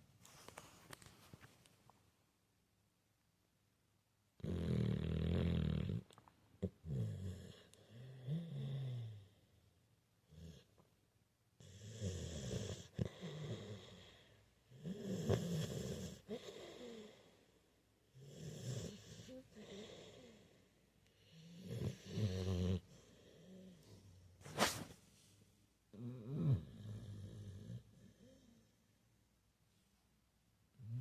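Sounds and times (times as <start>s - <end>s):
dog snoring: 4.4s - 9.4s, 11.6s - 17.3s, 18.1s - 20.6s, 21.2s - 24.1s, 25.9s - 28.7s.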